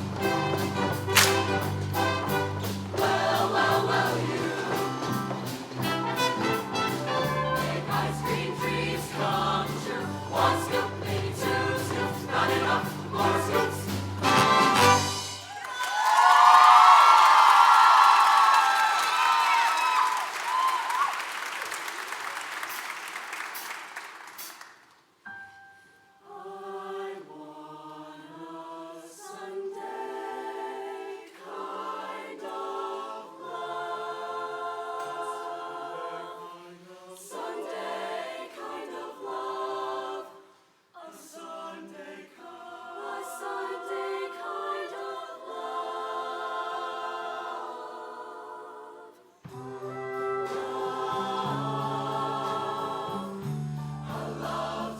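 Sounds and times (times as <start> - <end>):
audience cheering and applauding: 0.0 - 3.2, 14.2 - 24.8
choir singing held chords: 0.0 - 15.5, 26.2 - 54.9.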